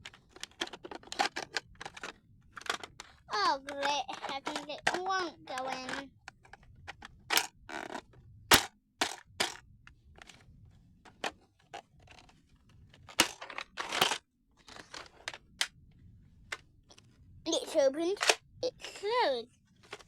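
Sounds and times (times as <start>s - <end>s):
plastic scraping: 0.0s - 15.7s, 16.4s - 20.0s.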